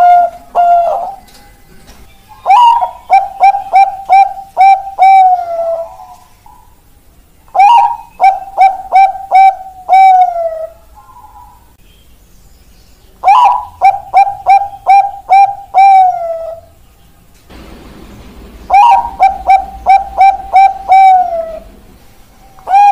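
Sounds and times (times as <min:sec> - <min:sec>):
dove cooing: 0:00.0 - 0:01.3, 0:02.3 - 0:06.8, 0:07.5 - 0:11.8, 0:13.2 - 0:16.8, 0:18.5 - 0:21.9, 0:22.5 - 0:22.9.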